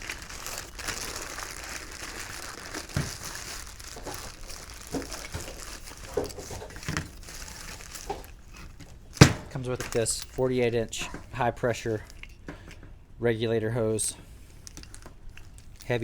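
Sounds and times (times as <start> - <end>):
plastic packaging crinkling: 0.0 - 12.4, 14.5 - 16.0.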